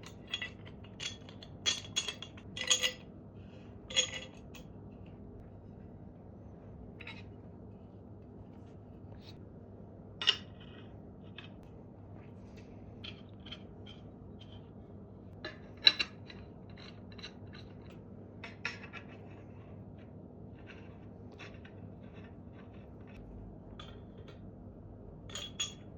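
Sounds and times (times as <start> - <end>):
metal pipe fittings clinking: 0.0 - 3.0, 3.9 - 4.7, 25.3 - 25.9
steady low hum: 0.0 - 25.9.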